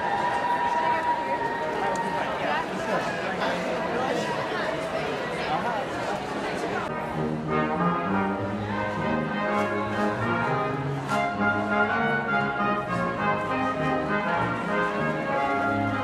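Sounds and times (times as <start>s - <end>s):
brass music: 6.9s - 16.0s.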